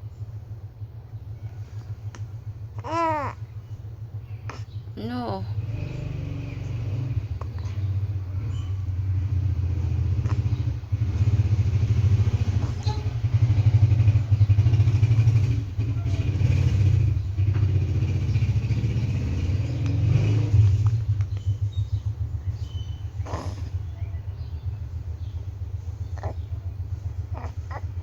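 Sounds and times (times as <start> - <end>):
low engine rumble: 0.0 - 28.0.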